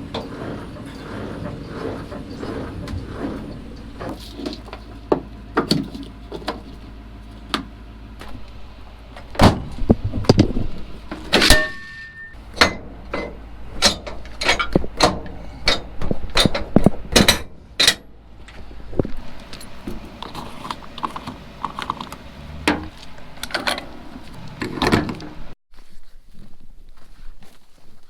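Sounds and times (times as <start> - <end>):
vehicle engine humming: 0.0 - 25.6
sharp metal knocks and clanks: 9.3 - 18.2.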